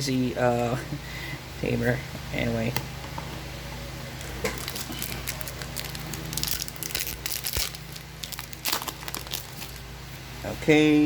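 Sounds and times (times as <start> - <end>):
foil wrapper crinkling: 4.2 - 9.9.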